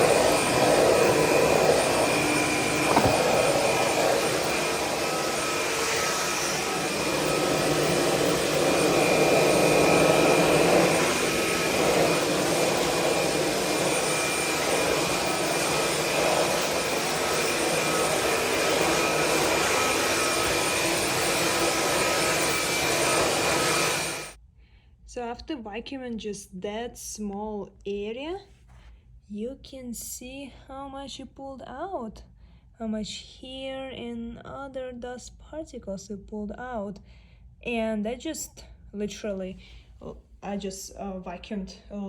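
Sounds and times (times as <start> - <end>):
stick vacuum motor whine: 0.0 - 24.4.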